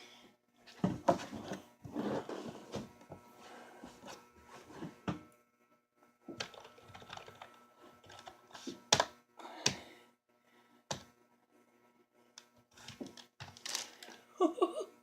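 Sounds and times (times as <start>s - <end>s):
computer keyboard keys clicking: 6.4s - 8.3s.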